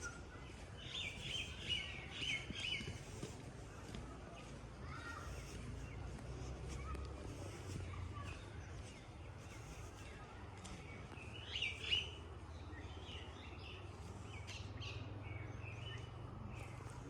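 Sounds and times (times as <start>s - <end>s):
birds chirping: 0.0s - 6.7s, 7.3s - 17.0s.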